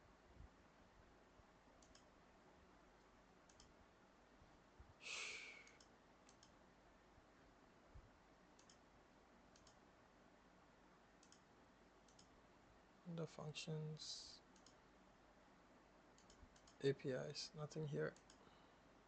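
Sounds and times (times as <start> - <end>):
computer mouse clicks: 1.8 - 2.1, 3.0 - 3.8, 5.6 - 6.6, 8.6 - 8.8, 9.5 - 9.8, 11.2 - 12.4, 14.5 - 14.8, 16.2 - 16.8, 18.1 - 18.5
breathy exhale: 5.0 - 5.7.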